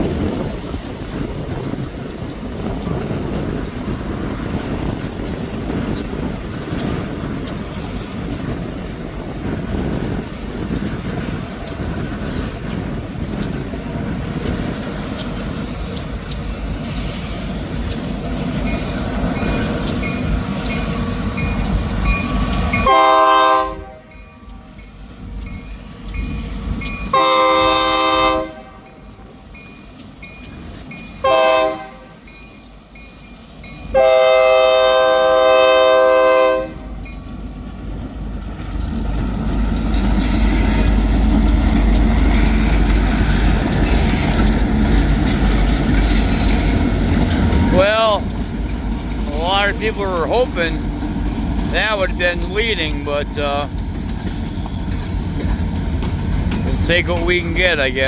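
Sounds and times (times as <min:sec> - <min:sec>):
wind buffeting microphone: 0:00.0 - 0:22.9, 0:35.2 - 0:58.0
low rumble of train: 0:00.0 - 0:58.0
locomotive air horn blasts: 0:22.8 - 0:24.7, 0:27.1 - 0:29.0, 0:31.2 - 0:32.3, 0:33.9 - 0:36.8.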